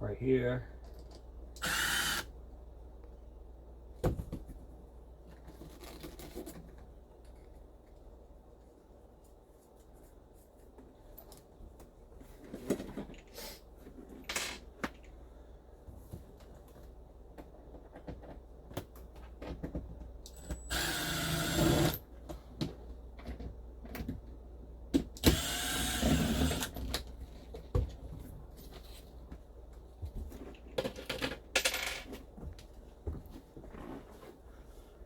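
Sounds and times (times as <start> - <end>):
cordless drill spinning screws: 1.6 - 2.3, 20.7 - 22.0, 25.2 - 26.8.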